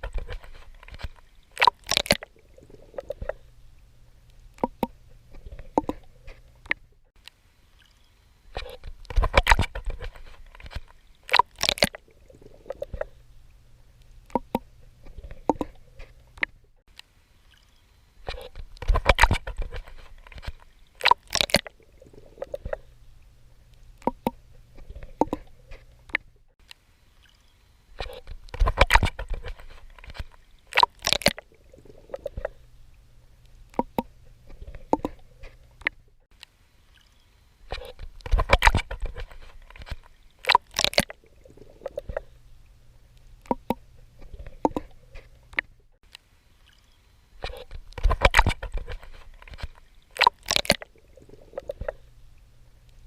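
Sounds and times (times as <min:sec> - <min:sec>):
small water drips: 0:00.0 - 0:53.0
water sloshing: 0:00.0 - 0:53.0
faint low rumble: 0:31.4 - 0:36.7, 0:41.1 - 0:50.0, 0:50.8 - 0:53.0.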